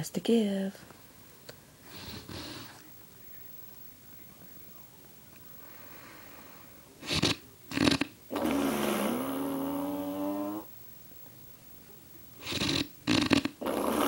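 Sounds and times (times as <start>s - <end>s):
person snoring loudly: 7.0s - 10.7s, 12.4s - 14.0s.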